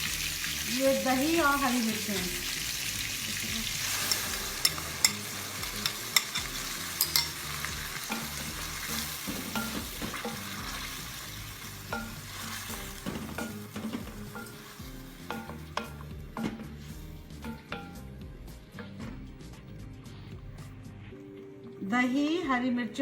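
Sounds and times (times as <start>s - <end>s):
food sizzling in hot oil: 0.0s - 18.6s
spoon scraping a pot: 3.4s - 18.0s.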